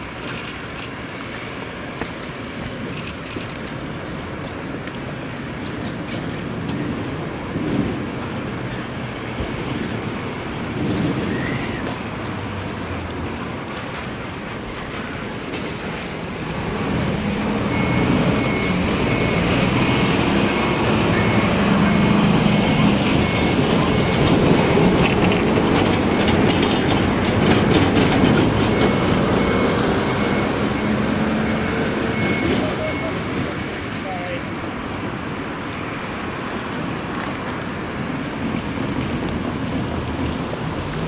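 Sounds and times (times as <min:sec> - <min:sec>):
train running on rails: 0:00.0 - 0:41.0
high repeating beep: 0:12.2 - 0:24.0, 0:28.0 - 0:33.4.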